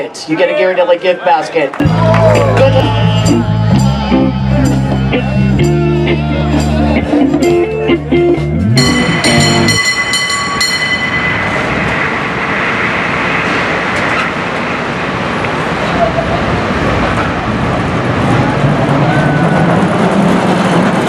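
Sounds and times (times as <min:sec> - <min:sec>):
steady noisy rumble: 0:01.8 - 0:21.0
cable car bell ringing: 0:08.7 - 0:12.8.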